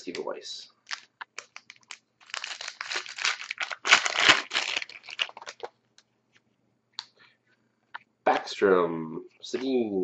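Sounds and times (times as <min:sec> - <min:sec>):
foil wrapper crinkling and tearing: 0:00.9 - 0:05.7.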